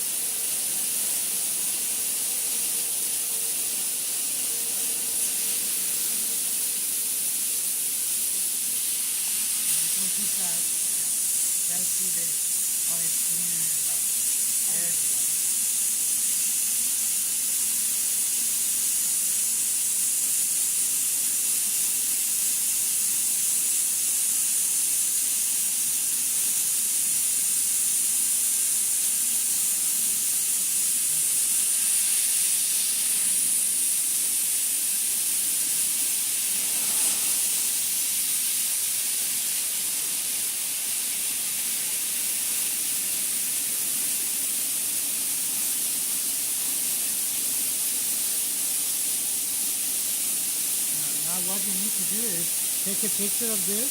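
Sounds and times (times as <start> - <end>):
cleaning machine hiss: 0.0 - 53.9.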